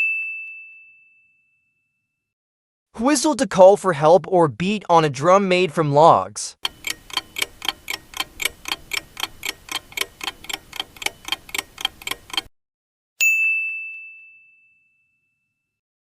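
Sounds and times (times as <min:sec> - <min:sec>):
clock ticking: 0:06.6 - 0:12.5
bell ding: 0:13.2 - 0:15.7.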